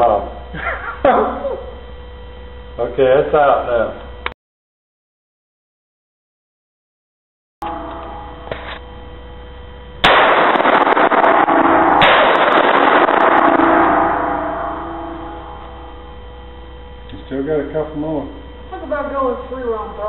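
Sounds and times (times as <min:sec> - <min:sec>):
electrical hum: 0:00.0 - 0:04.4, 0:07.6 - 0:20.0
rifle shots: 0:10.0 - 0:14.6.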